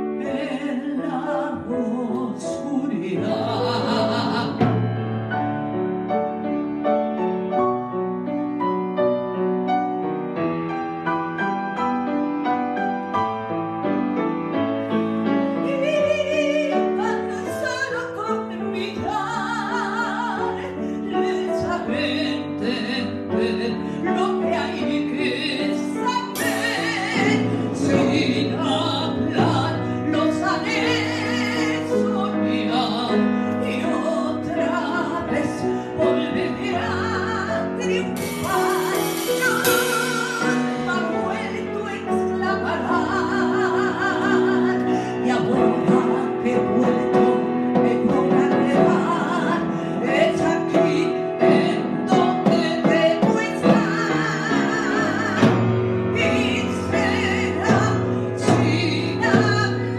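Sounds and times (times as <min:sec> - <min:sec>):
woman singing a ballad: 0:00.0 - 0:04.9, 0:15.5 - 0:59.9
symphony orchestra: 0:37.5 - 0:42.4.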